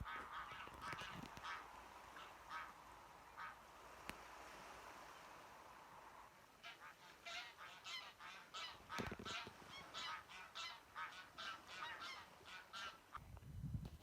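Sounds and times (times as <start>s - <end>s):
geese honking: 0.0s - 3.7s, 6.6s - 13.2s.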